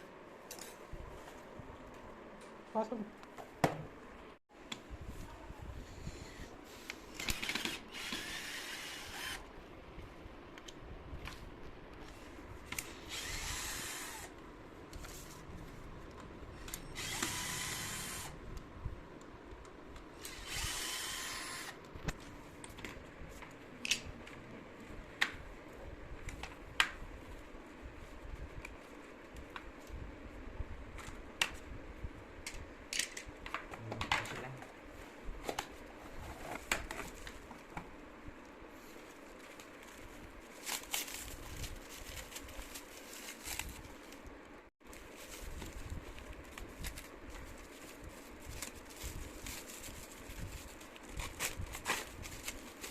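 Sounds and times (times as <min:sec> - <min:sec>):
electric drill whirring: 0:07.2 - 0:09.4, 0:12.9 - 0:14.3, 0:16.8 - 0:18.4, 0:20.2 - 0:21.8.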